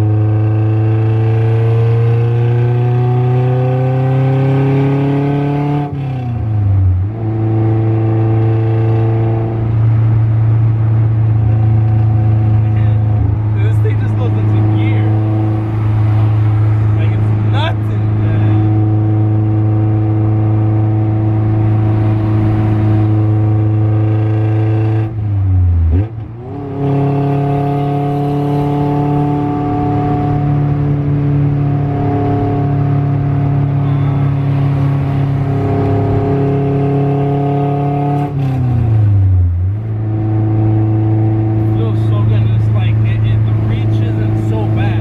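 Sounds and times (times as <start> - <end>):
car engine running: 0.0 - 45.0.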